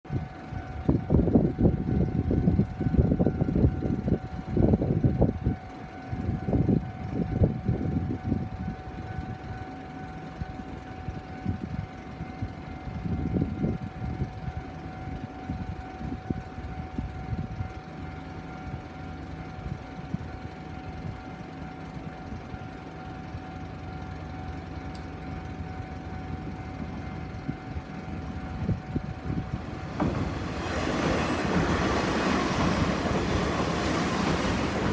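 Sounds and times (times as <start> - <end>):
wind buffeting microphone: 0.1 - 9.6, 26.2 - 34.9
low rumble of approaching train: 0.1 - 34.9
level crossing warning bell ringing: 8.1 - 34.9.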